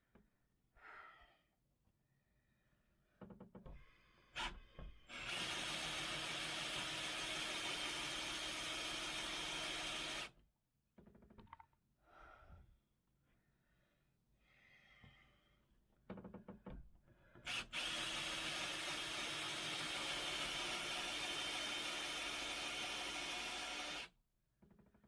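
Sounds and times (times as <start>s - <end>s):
power drill cutting through wood: 5.1s - 10.3s, 17.5s - 24.1s.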